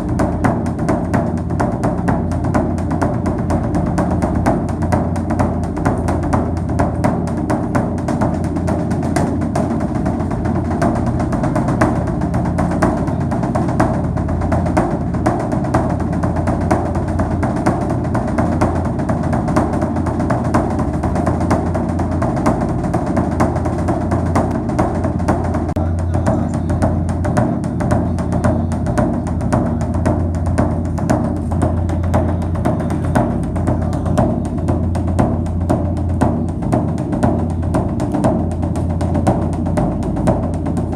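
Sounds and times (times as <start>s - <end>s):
quick drum and percussion beat: 0.0s - 40.9s.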